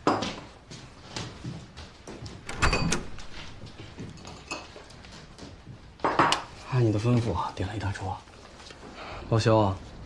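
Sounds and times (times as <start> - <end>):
light knocks and clatters: 0.0 - 7.5.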